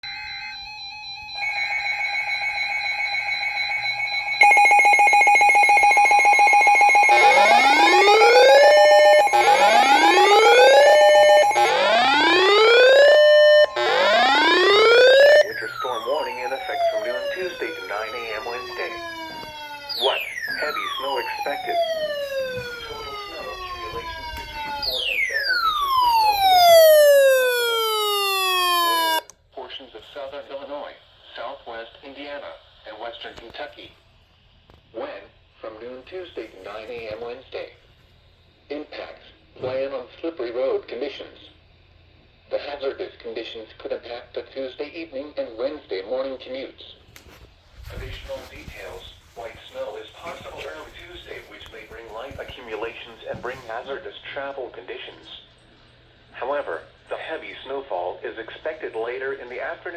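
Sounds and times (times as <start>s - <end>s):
rising siren-like whoop: 0.0s - 29.2s
rapidly pulsing alert tone: 2.4s - 19.2s.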